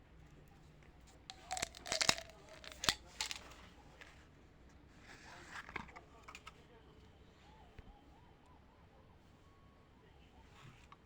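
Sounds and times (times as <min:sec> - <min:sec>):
candy wrapper crinkling: 0:01.3 - 0:03.6.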